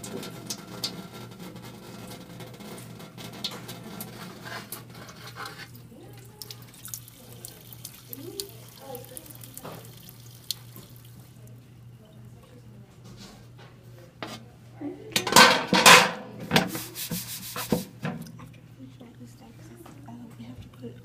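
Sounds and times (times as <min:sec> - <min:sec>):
water running from sink tap: 0:00.0 - 0:12.6
metal baking sheet scraping: 0:00.1 - 0:05.8, 0:15.2 - 0:18.1.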